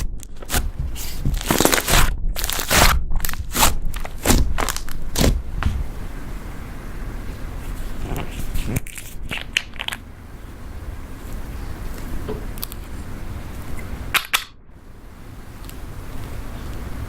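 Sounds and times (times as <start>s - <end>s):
slime crunching and crackling: 0.0s - 5.8s, 8.0s - 10.1s.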